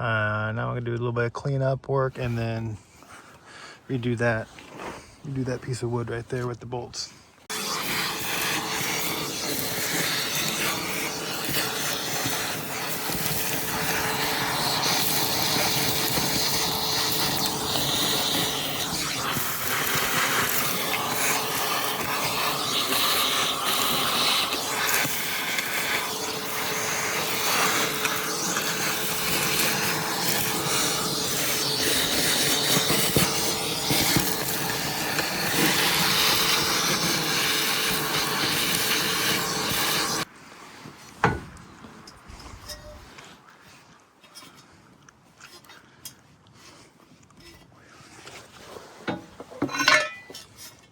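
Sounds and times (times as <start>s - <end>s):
shop vacuum running: 7.5s - 40.3s.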